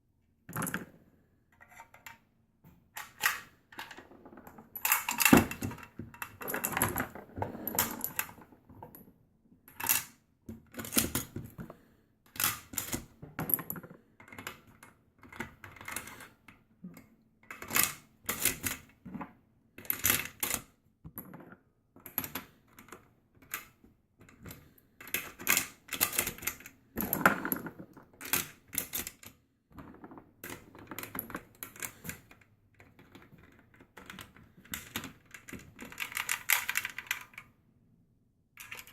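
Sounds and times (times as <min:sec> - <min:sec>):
metallic clicks loading cartridges: 0:03.0 - 0:04.0, 0:04.8 - 0:06.8, 0:38.6 - 0:38.9.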